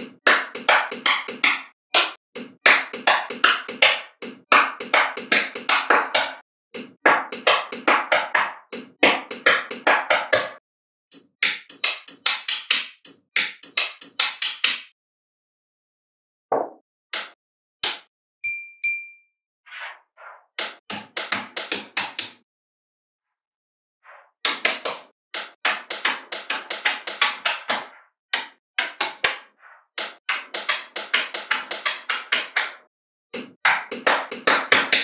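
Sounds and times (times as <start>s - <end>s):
magnetic balls clicking together: 11.1s - 14.9s.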